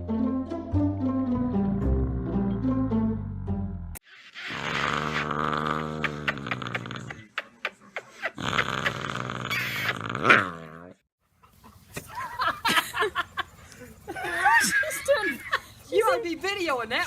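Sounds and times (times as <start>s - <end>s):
dog growling: 4.4s - 7.3s.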